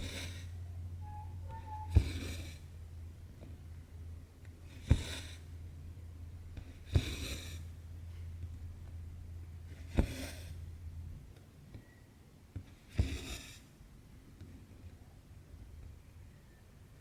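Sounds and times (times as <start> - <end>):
steady low hum: 0.0 - 11.4.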